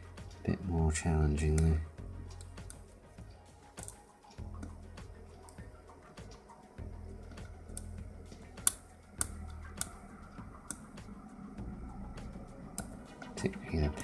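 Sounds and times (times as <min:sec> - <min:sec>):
low hum: 0:00.0 - 0:14.0
lock pick metallic clicks: 0:03.8 - 0:04.0.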